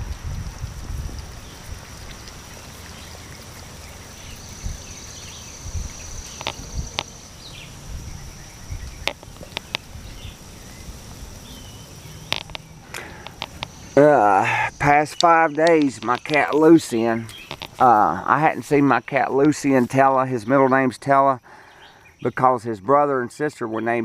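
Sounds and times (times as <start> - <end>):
high-pitched insect trill: 0.0 - 24.0
sharp clicks: 6.3 - 7.1, 8.8 - 9.9, 12.2 - 13.9, 15.0 - 17.9.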